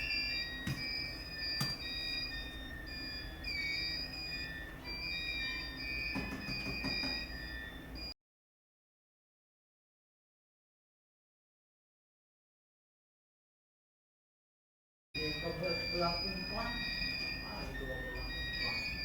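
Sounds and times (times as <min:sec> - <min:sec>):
steady high tones: 0:00.0 - 0:08.1, 0:15.2 - 0:19.0.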